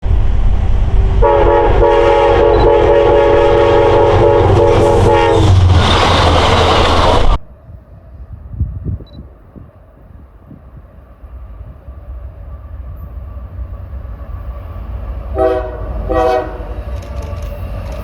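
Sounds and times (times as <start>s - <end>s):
passing train rumble: 0.0s - 18.0s
train horn chord: 1.2s - 5.6s, 15.3s - 17.6s.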